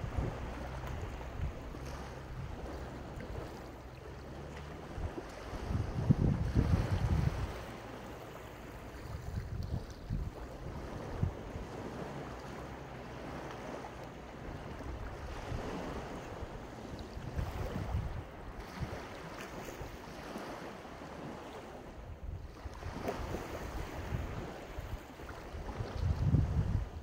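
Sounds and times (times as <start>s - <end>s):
sea waves breaking on shore: 0.0s - 27.0s
wind buffeting microphone: 0.0s - 27.0s.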